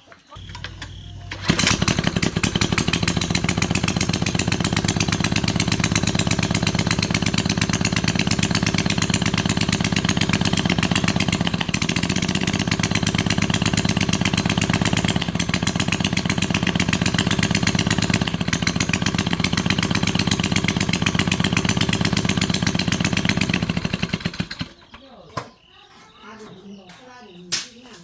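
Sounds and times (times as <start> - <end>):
small petrol engine running: 0.4 - 25.0.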